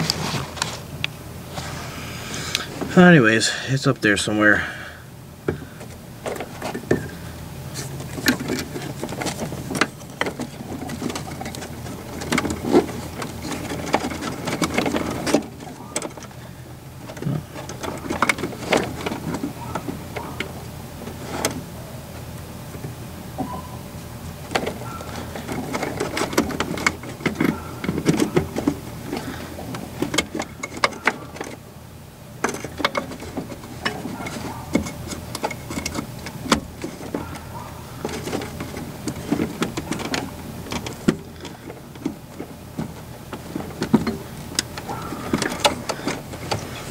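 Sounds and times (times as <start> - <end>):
clicks and knocks of tools: 24.5 - 31.6, 32.4 - 46.9.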